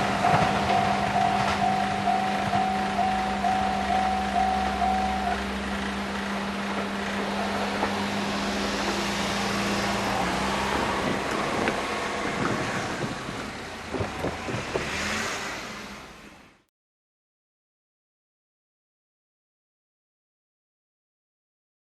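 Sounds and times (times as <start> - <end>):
rushing noise: 0.0 - 16.7
vehicle engine hum: 0.0 - 16.7.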